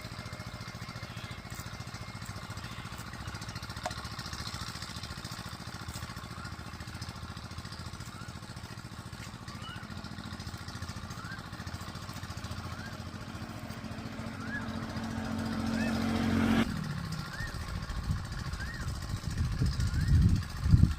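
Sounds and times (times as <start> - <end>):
small engine throbbing: 0.0 - 20.9
bird rising chirp: 10.8 - 20.2.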